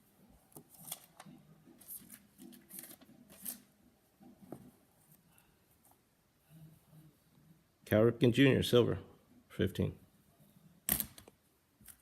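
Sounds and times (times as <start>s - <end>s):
trading cards rustling: 0.6s - 3.7s.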